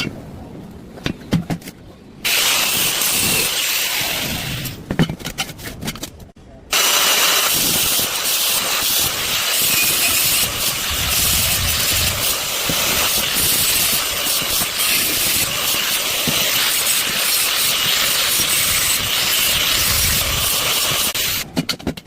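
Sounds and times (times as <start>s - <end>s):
welding arc hissing and crackling: 2.2s - 4.8s, 6.7s - 21.4s.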